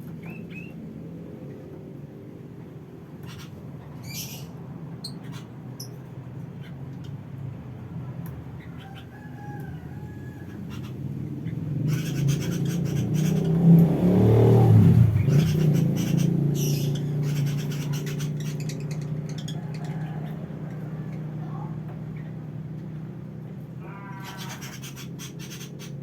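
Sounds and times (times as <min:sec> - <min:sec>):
rooster crowing: 0:08.7 - 0:10.7, 0:19.5 - 0:21.6.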